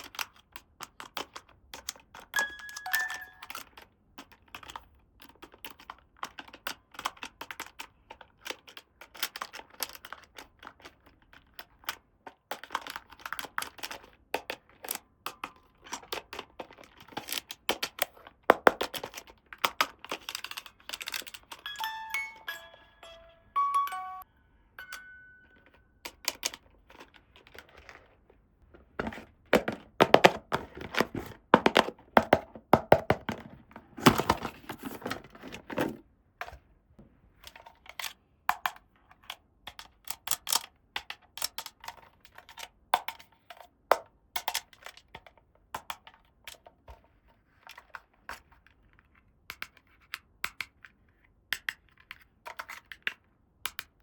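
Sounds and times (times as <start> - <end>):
plastic toy pieces clicking: 0.0 - 22.5, 37.5 - 46.7.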